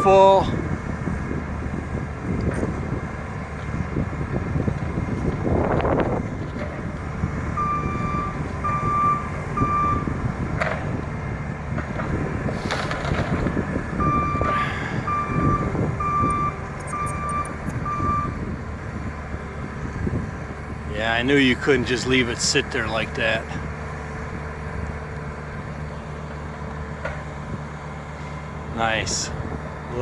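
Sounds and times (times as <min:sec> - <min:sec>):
skid steer engine running: 0:00.0 - 0:30.0
reverse backup alarm beeping: 0:07.6 - 0:10.1, 0:14.0 - 0:18.4.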